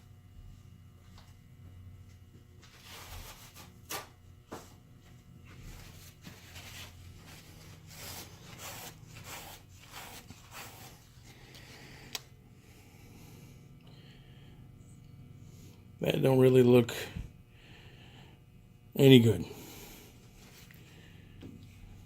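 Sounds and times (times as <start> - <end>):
wire brush scrubbing metal: 7.5 - 11.1.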